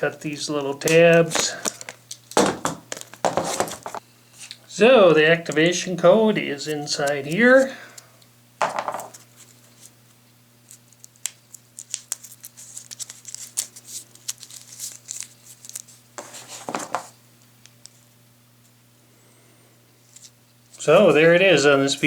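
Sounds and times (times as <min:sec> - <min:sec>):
paper and card rustling: 0:00.8 - 0:04.0, 0:10.7 - 0:17.1.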